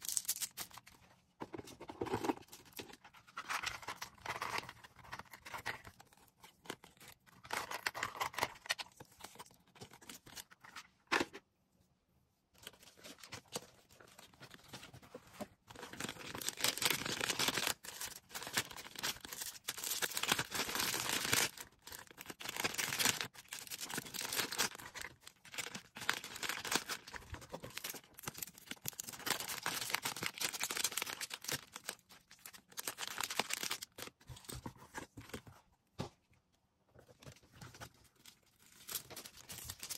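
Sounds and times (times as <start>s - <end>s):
packaging rustling and crinkling: 12.6s - 35.5s, 37.2s - 39.9s.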